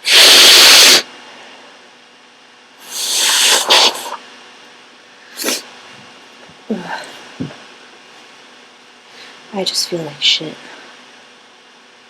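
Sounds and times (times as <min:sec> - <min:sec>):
person blowing nose: 0:00.0 - 0:01.1, 0:02.8 - 0:04.2, 0:05.4 - 0:05.6.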